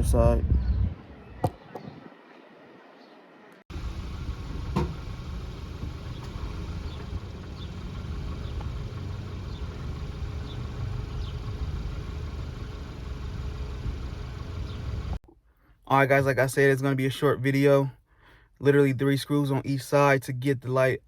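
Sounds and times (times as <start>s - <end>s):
car engine idling: 3.7s - 15.2s.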